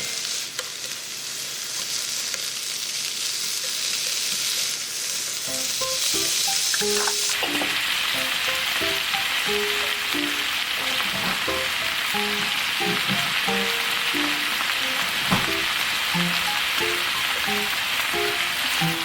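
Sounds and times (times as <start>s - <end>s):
vegetables sizzling in a pan: 0.0s - 19.0s
light background music: 5.5s - 19.0s.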